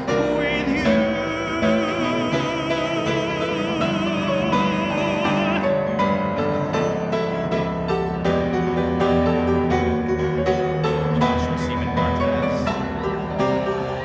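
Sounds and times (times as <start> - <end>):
man singing vibrato note: 0.0 - 6.4
piano accompaniment: 0.0 - 14.0.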